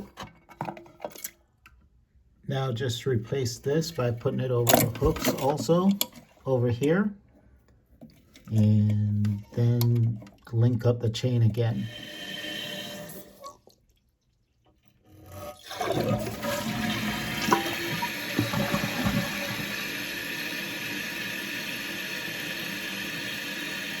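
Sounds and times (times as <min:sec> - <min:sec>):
toilet flushing: 0:11.5 - 0:24.0
knocks in toilet: 0:17.4 - 0:19.7.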